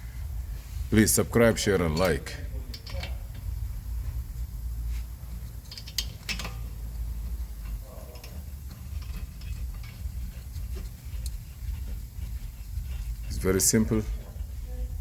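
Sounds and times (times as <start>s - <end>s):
steady low hum: 0.0s - 15.0s
light ticks of tools: 1.9s - 3.5s
sharp metallic clicks: 5.5s - 6.8s.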